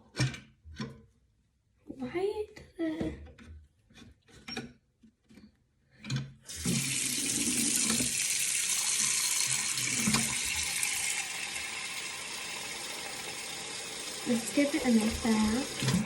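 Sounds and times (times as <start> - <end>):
water running from a tap: 6.5 - 16.0.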